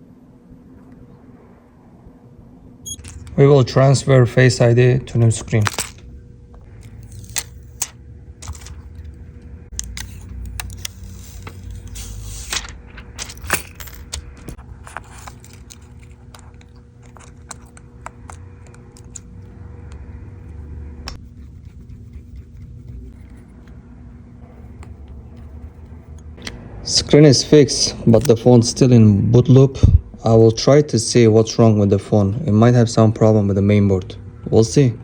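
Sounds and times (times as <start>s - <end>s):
low steady hum: 0.0s - 35.0s
small metal tools clicking and scraping: 6.8s - 20.0s.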